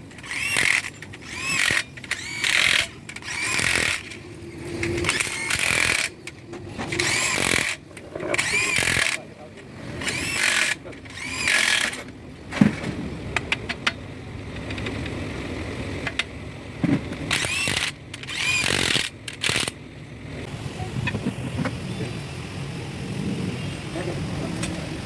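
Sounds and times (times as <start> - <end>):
power tool bursts: 0.2 - 4.2, 4.9 - 6.2, 6.9 - 9.2, 10.0 - 12.0, 17.3 - 19.8.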